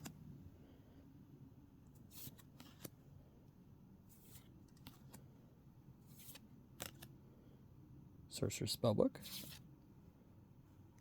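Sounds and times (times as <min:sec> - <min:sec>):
trading cards sliding: 0:02.0 - 0:03.0, 0:04.1 - 0:05.3, 0:06.0 - 0:07.1, 0:09.2 - 0:09.7.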